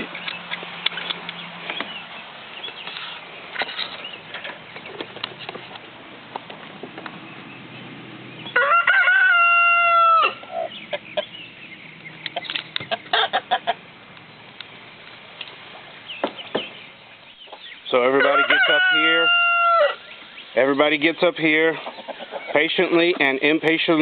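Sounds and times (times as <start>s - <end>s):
hens clucking: 8.4s - 14.5s, 15.8s - 24.0s
rooster crowing: 8.5s - 10.6s, 18.0s - 20.1s.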